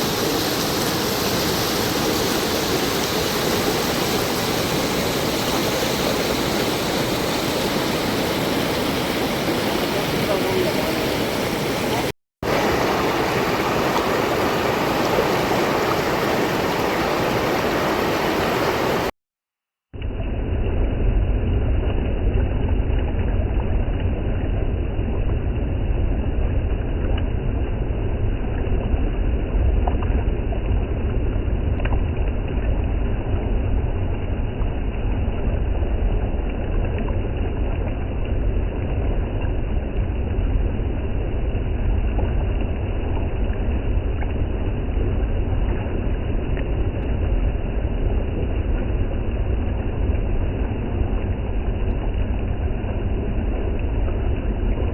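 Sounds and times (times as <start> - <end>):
river water rushing: 0.0 - 19.1
heavy low rumble: 20.0 - 54.9.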